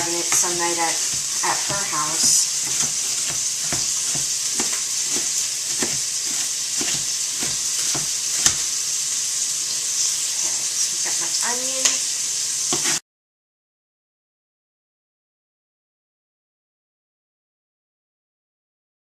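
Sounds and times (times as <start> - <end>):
sausage sizzling in a pot: 0.0 - 13.0
knife chopping on cutting board: 0.3 - 8.8, 12.7 - 13.0.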